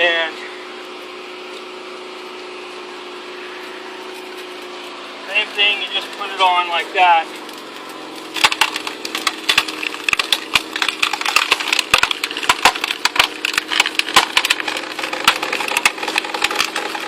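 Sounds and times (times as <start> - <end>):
engine humming: 0.0 - 17.0
log cracking and splintering: 5.4 - 17.0.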